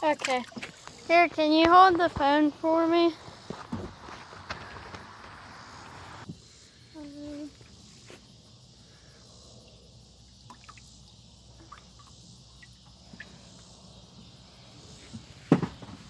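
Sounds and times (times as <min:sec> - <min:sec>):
faint insect-like hum: 0:00.0 - 0:16.0.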